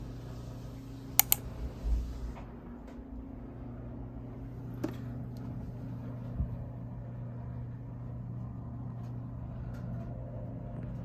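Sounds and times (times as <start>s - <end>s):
low mechanical hum: 0.0s - 11.0s
faint clicks: 1.2s - 1.4s.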